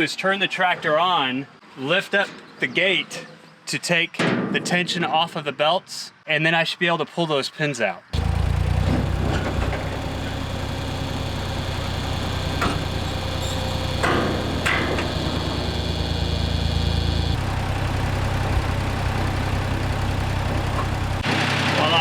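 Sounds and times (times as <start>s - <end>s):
tractor engine idling: 8.2s - 22.0s
sharp clicks: 9.0s - 17.4s.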